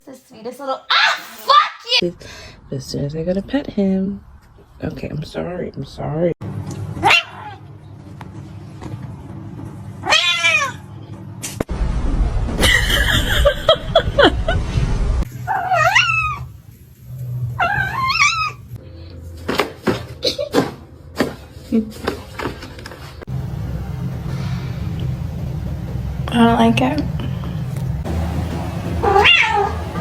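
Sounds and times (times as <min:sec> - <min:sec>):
cat yowling: 0:07.0 - 0:07.6, 0:10.0 - 0:10.9, 0:15.5 - 0:16.5, 0:17.6 - 0:18.6, 0:29.0 - 0:30.0
loud rough noise: 0:23.3 - 0:30.0.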